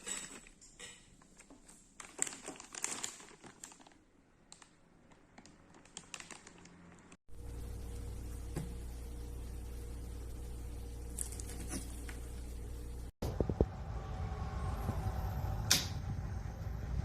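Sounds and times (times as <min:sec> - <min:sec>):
plastic packaging crinkling: 0:01.4 - 0:07.2, 0:11.1 - 0:12.2
electrical motor hum: 0:07.3 - 0:17.0.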